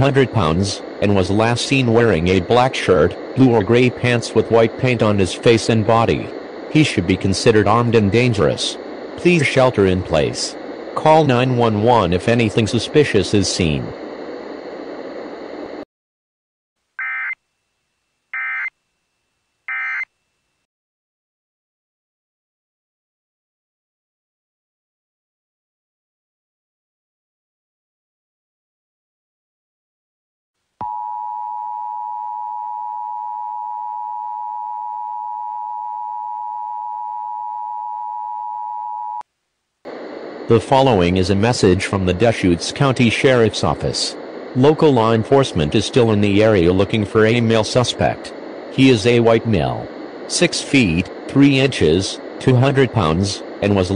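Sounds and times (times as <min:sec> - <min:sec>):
steady hiss: 0:00.0 - 0:15.8, 0:39.3 - 0:53.9
screeching two-tone digital data: 0:17.0 - 0:17.4, 0:18.4 - 0:18.7, 0:19.7 - 0:20.1
two-tone alarm: 0:17.0 - 0:17.4, 0:18.3 - 0:18.8, 0:19.7 - 0:20.2, 0:30.8 - 0:39.2.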